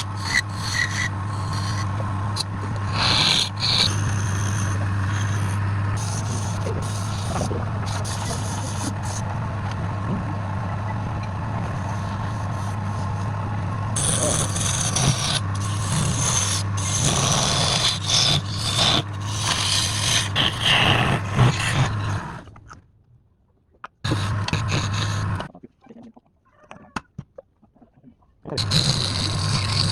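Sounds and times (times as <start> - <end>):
wood lathe humming: 0.0 - 22.4, 24.1 - 25.4
tool scraping spinning wood: 0.0 - 22.5, 24.1 - 25.5, 28.6 - 29.9.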